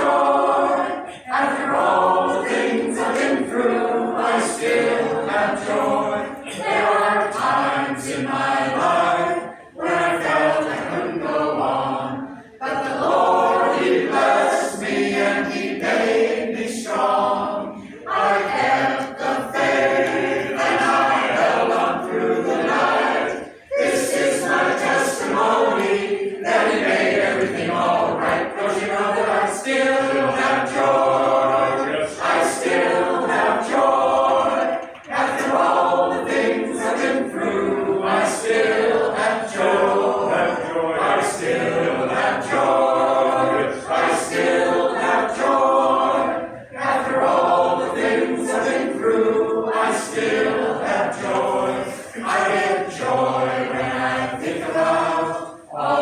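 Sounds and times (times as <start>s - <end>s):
choir singing a gospel song: 0.0s - 56.0s.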